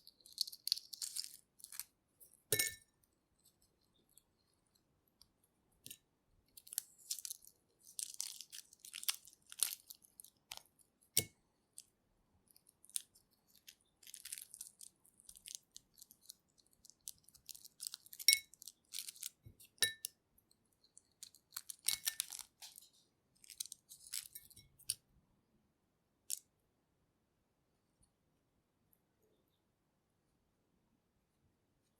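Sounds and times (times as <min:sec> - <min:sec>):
eggshell crackling as peeled: 0:00.0 - 0:01.9, 0:06.5 - 0:10.9, 0:12.5 - 0:19.4.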